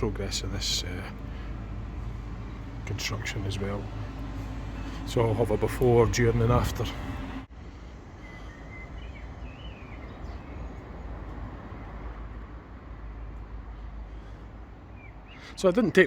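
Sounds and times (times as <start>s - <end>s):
outdoor background noise: 0.0s - 16.0s
faint bird chirps: 8.0s - 11.1s.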